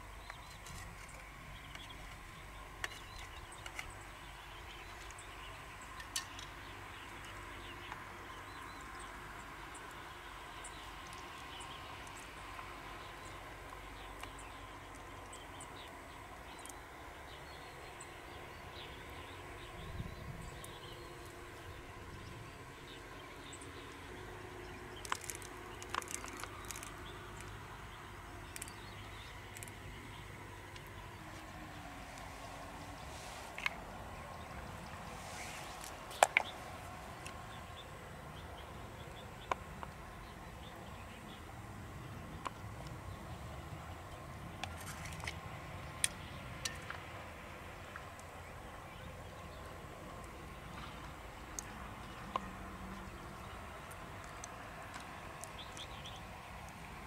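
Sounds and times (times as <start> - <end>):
steady background hiss: 0.0 - 44.6
small birds chirping: 0.0 - 57.0.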